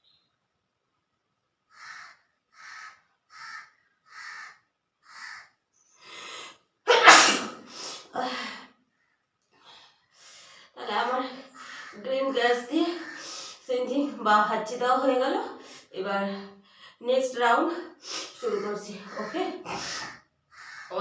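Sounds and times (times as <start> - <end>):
woman sneezing: 6.9 - 8.1.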